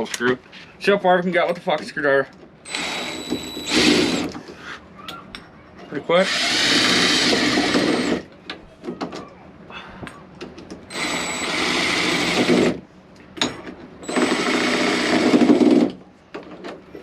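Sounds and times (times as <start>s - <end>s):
cordless drill driving screws: 2.7s - 4.3s, 6.3s - 8.2s, 10.9s - 12.8s, 14.1s - 15.8s.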